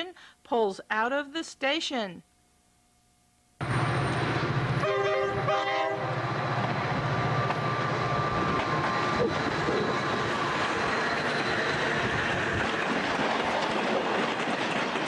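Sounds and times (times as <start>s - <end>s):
locomotive engine humming: 3.6s - 15.0s
train horn blasts: 4.8s - 6.2s.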